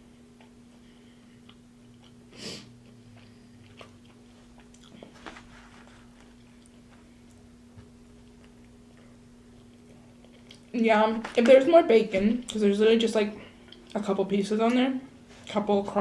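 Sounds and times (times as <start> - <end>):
faint steady hum: 0.0 - 16.0
person chewing: 0.1 - 10.8, 13.5 - 14.0.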